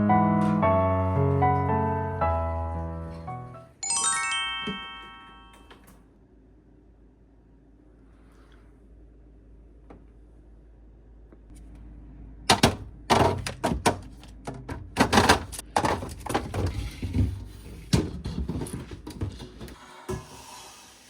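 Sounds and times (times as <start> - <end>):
faint hum: 5.2 - 13.1
household items knocking and clacking: 12.5 - 19.8.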